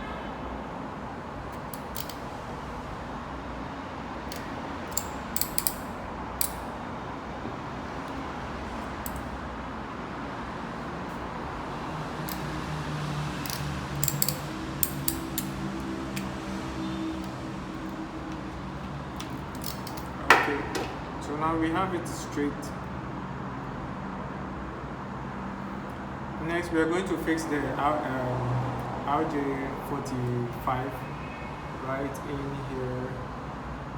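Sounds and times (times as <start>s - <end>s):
crimping tool clicks and snips: 1.5s - 2.2s, 4.3s - 6.6s, 13.4s - 16.4s
wires being handled: 13.3s - 21.1s.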